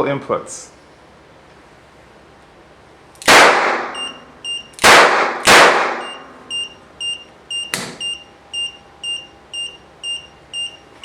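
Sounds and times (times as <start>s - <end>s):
gunshots with ringing tail: 3.3s - 4.0s, 4.8s - 6.1s
alarm beeper beeping: 3.9s - 4.7s, 6.0s - 10.8s.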